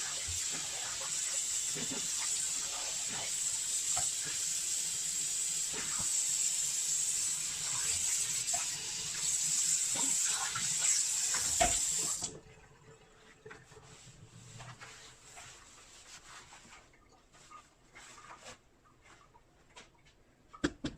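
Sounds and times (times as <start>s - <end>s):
tap water running into sink: 0.0s - 14.1s.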